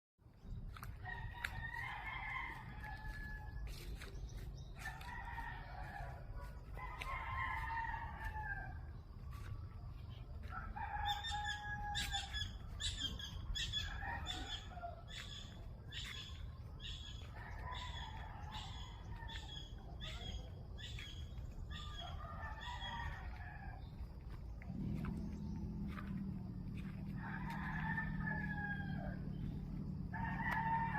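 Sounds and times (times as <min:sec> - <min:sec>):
roosters crowing: 0:00.7 - 0:30.9
steady low rumble: 0:23.1 - 0:30.9.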